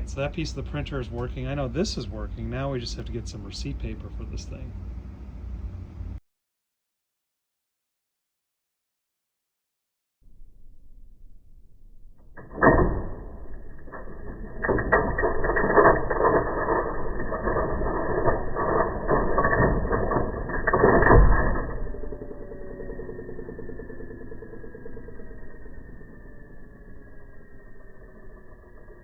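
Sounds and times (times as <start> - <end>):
cash register gears clattering: 12.8 - 22.1.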